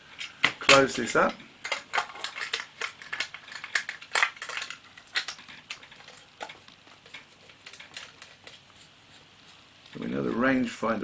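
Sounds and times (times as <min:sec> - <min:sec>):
camera clicks and clatter: 0:01.6 - 0:08.5.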